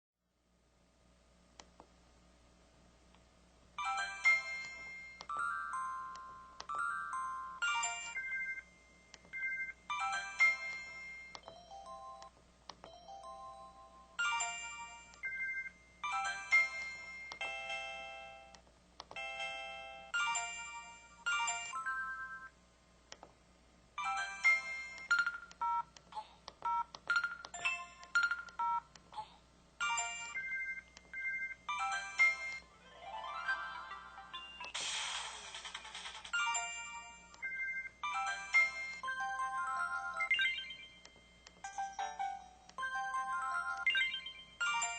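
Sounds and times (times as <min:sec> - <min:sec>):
phone electronic chimes and jingles: 0:03.8 - 0:12.2, 0:36.3 - 0:44.9.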